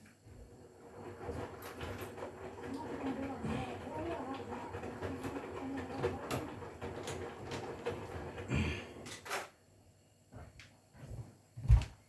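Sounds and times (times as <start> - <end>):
washing machine drum turning: 0.6 - 8.8.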